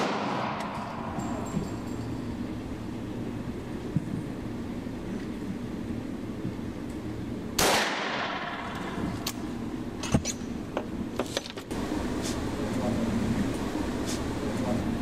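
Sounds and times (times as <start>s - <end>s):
shotgun shot: 0.0s - 0.7s, 7.6s - 8.5s.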